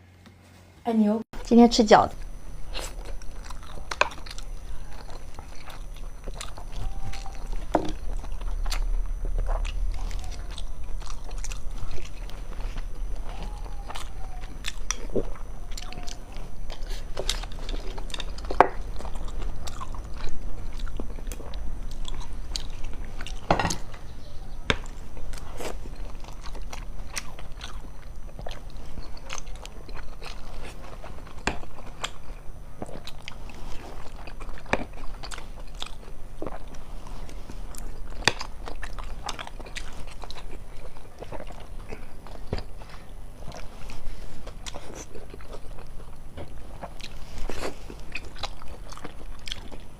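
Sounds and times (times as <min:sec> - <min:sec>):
person chewing food: 0:02.1 - 0:49.9.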